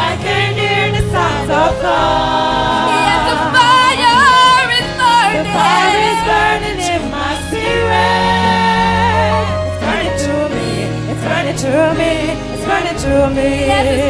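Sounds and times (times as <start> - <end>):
gospel choir singing: 0.0 - 14.0.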